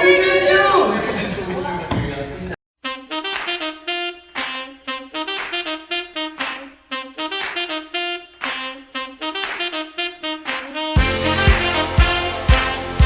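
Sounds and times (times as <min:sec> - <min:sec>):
upbeat horn-led music: 0:02.8 - 0:13.0.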